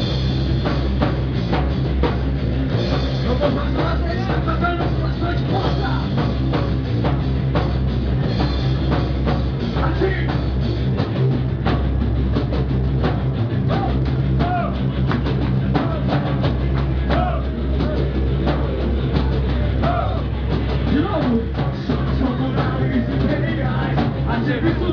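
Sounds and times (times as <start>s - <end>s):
heavy rock music: 0.0s - 24.9s.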